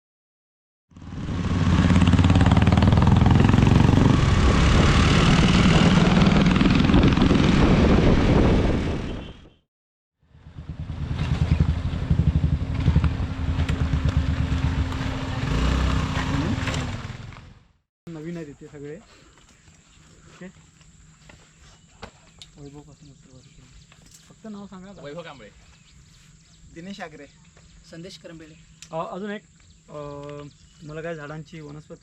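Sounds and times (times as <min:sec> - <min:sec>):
vehicle engine running: 0:00.9 - 0:07.4, 0:10.3 - 0:17.8
rushing wind noise: 0:01.1 - 0:09.6.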